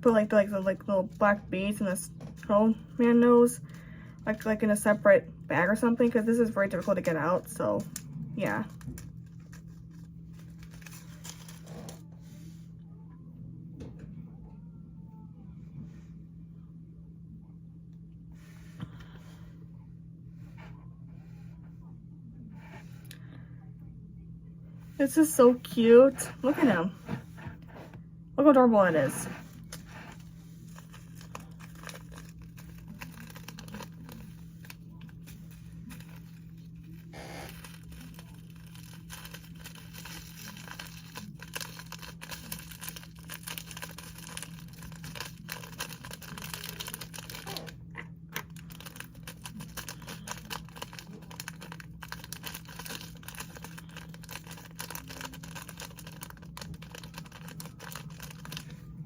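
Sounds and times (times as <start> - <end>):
low hum: 0.0 - 59.0.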